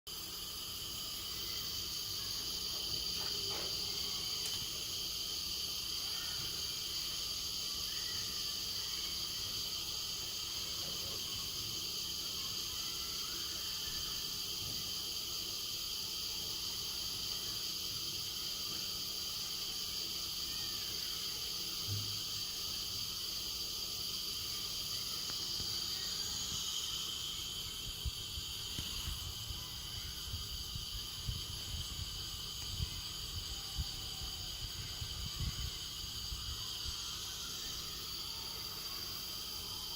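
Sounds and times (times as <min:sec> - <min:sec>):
gas burner flame hissing: 0:00.1 - 0:39.9.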